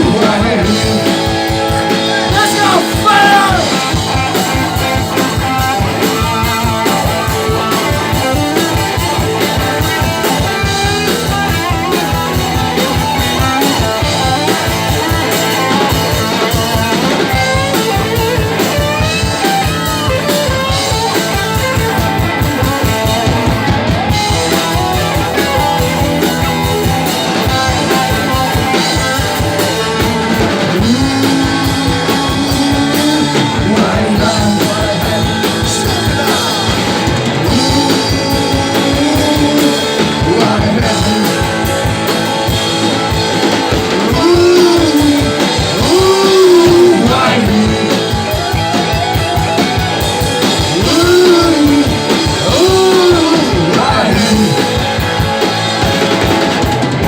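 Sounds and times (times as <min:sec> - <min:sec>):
person singing: 0:00.0 - 0:05.0, 0:29.8 - 0:41.9, 0:43.9 - 0:48.3, 0:50.6 - 0:55.0
live rock band playing: 0:00.0 - 0:57.0.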